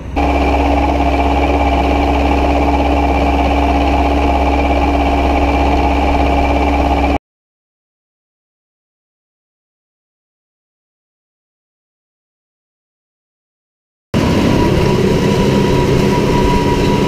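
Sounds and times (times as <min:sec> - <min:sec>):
constant whine: 0:00.0 - 0:07.2, 0:14.2 - 0:17.0
tractor diesel engine running: 0:00.0 - 0:07.2, 0:14.2 - 0:17.0.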